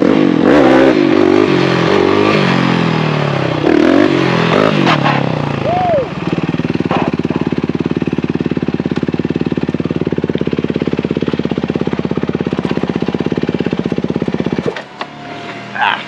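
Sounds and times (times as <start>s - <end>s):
motorcycle engine idling: 5.2s - 16.0s.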